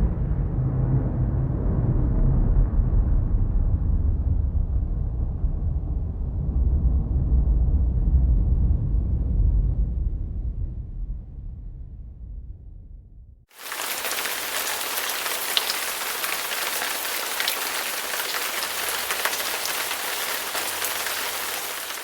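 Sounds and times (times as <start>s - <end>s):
low rumble: 0.0s - 13.5s
rain pattering on a surface: 13.5s - 22.0s.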